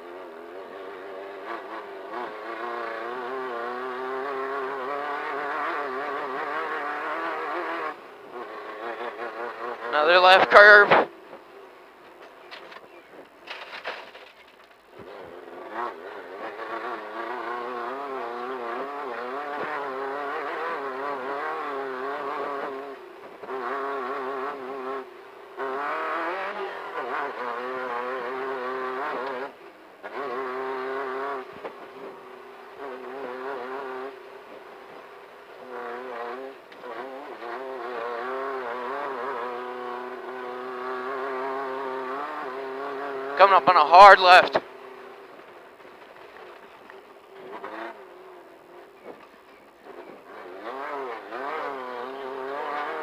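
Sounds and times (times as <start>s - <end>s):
race car engine running hard: 0.0s - 53.0s.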